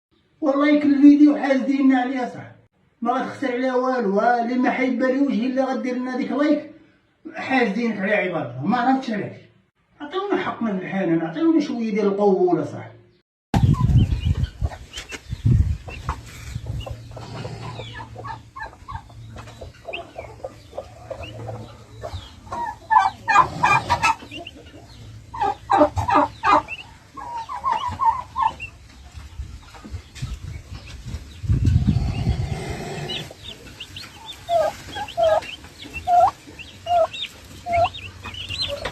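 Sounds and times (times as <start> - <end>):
chickens clucking: 13.6 - 38.9.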